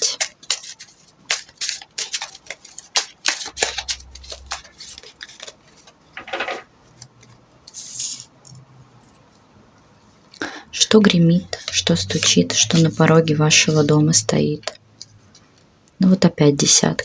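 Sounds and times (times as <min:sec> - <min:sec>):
cards clicking and tapping: 0:00.0 - 0:07.3.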